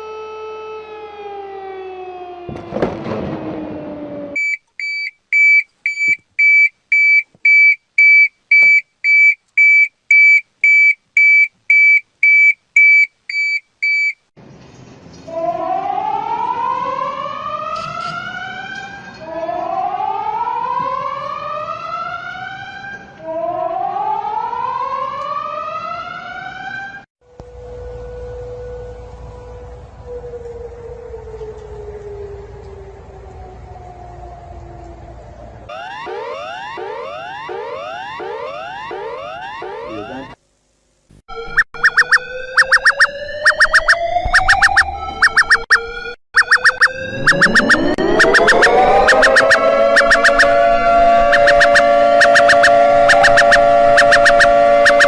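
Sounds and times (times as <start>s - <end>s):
whooping siren glides: 0.0s - 4.4s, 15.2s - 40.4s, 41.3s - 55.0s
high pulsing beep: 41.3s - 50.6s, 51.2s - 55.0s
discordant multi-tone drone: 46.5s - 55.0s.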